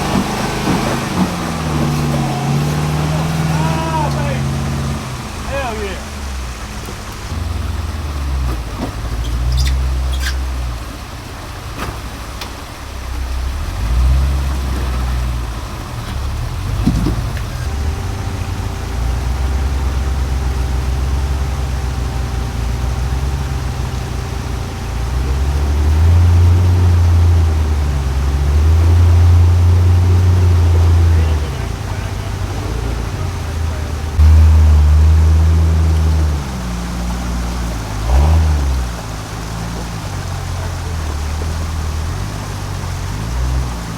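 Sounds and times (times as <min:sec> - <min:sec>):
vehicle engine at low revs: 0:00.0 - 0:43.9
steady whine: 0:17.2 - 0:38.1.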